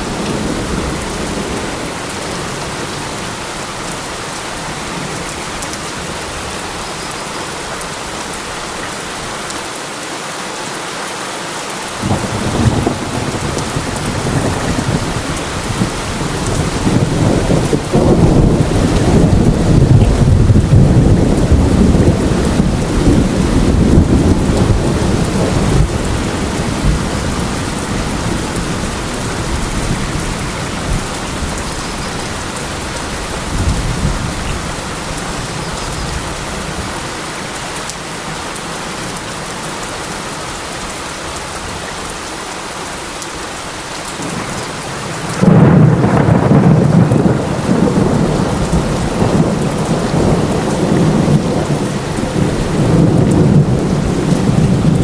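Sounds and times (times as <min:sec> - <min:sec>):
heavy rain: 0:00.0 - 0:55.0
thunder rumbling: 0:12.0 - 0:36.9, 0:44.2 - 0:55.0.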